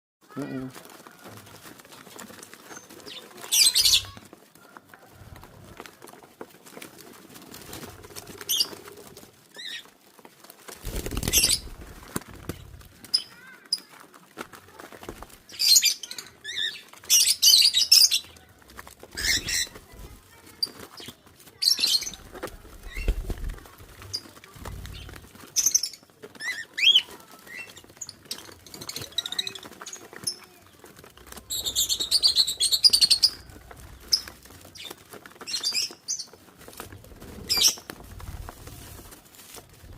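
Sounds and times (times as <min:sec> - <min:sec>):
quail wings flapping: 0:00.2 - 0:39.9
quail high chirps: 0:02.9 - 0:04.3, 0:31.4 - 0:35.0
low thumps and rustles: 0:36.5 - 0:39.9.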